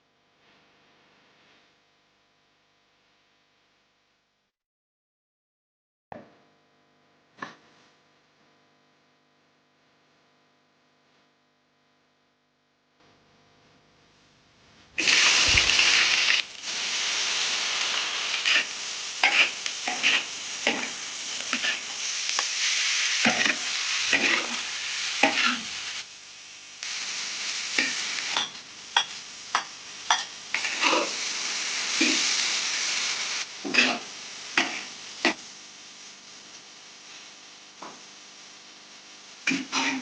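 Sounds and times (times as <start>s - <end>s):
food sizzling in hot oil: 15.0s - 40.0s
metal spatula scraping pan: 18.4s - 21.9s.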